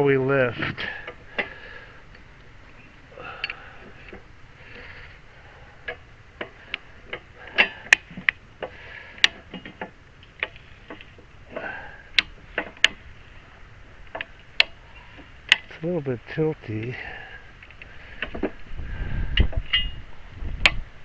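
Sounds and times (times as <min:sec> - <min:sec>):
lifter mechanism clicking: 0:05.8 - 0:15.8.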